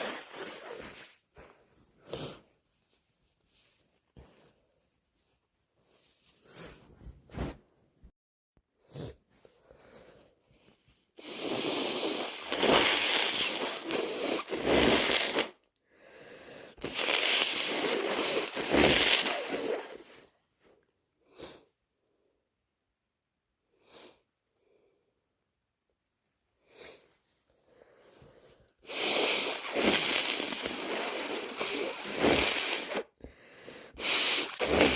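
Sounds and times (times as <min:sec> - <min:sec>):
person blowing nose: 0:00.0 - 0:02.6, 0:11.2 - 0:15.7, 0:16.6 - 0:20.3, 0:26.6 - 0:28.1, 0:28.8 - 0:34.9
short sniffs: 0:00.0 - 0:02.6, 0:11.2 - 0:15.6, 0:16.7 - 0:20.3, 0:21.3 - 0:21.8, 0:26.6 - 0:34.9.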